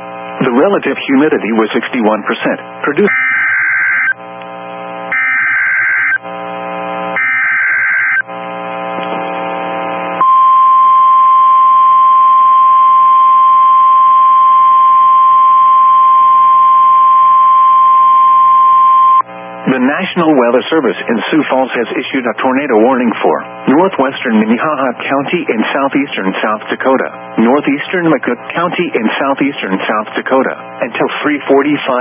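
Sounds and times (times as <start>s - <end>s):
buzzing hum: 0.0s - 20.3s
steady alarm tone: 3.0s - 4.2s, 5.1s - 6.2s, 7.1s - 8.3s.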